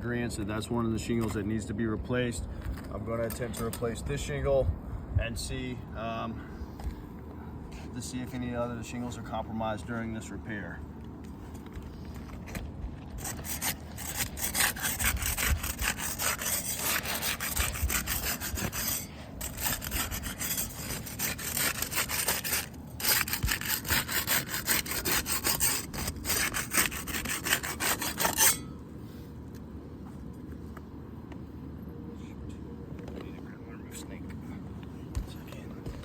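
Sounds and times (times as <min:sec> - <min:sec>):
tool scraping under roof shingles: 0:11.3 - 0:28.7.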